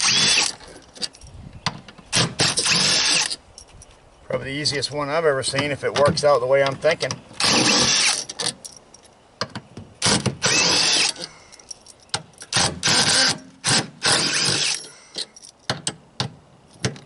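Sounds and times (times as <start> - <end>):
power drill whining in bursts: 0.0 - 0.6, 2.1 - 3.4, 7.4 - 8.2, 10.0 - 11.4, 12.5 - 15.4.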